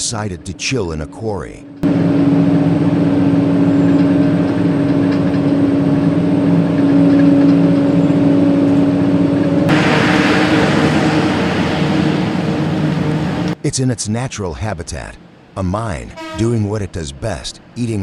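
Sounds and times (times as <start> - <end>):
heavy diesel machinery droning: 0.0 - 13.6
loud hiss: 9.7 - 13.6.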